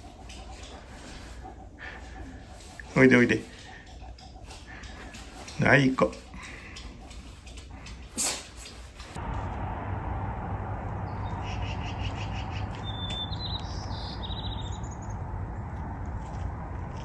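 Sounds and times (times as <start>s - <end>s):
songbirds chirping and trilling: 0.0s - 9.1s, 10.9s - 15.8s
outdoor rushing noise: 7.6s - 17.0s.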